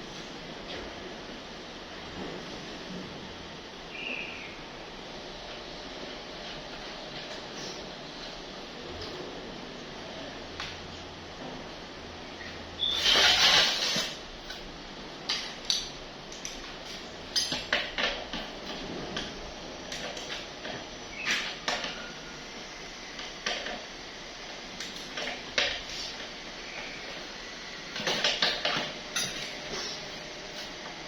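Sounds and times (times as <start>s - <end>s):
metal tools clinking: 29.1s - 29.6s.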